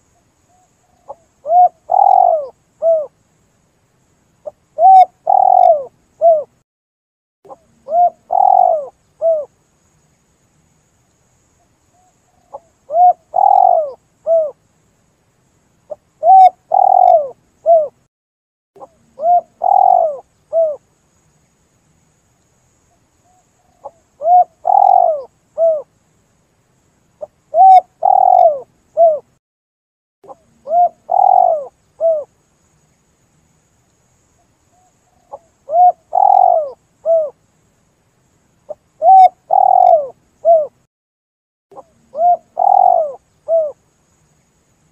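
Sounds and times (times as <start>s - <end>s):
dove cooing: 0.8s - 3.1s, 4.4s - 6.5s, 7.5s - 9.5s, 12.4s - 14.6s, 16.2s - 18.0s, 18.8s - 20.8s, 23.7s - 25.9s, 27.2s - 29.3s, 30.3s - 32.3s, 35.2s - 37.4s, 38.7s - 40.8s, 41.7s - 43.8s.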